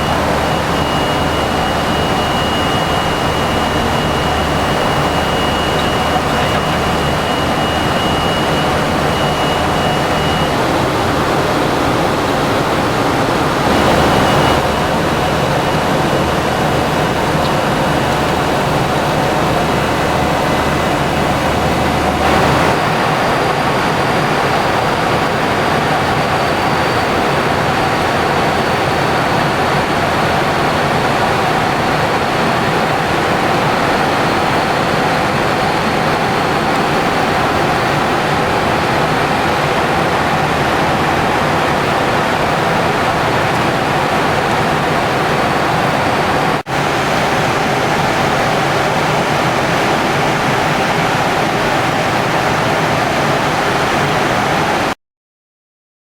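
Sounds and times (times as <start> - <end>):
rush of airflow: 0.0 - 24.4
low hum: 0.0 - 25.4
jet engine noise: 0.0 - 55.0
thin high whine: 0.0 - 55.0.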